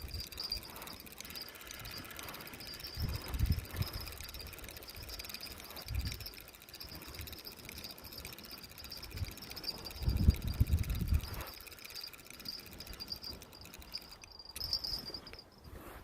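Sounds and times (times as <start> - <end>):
night insects chirring: 0.0 - 15.5.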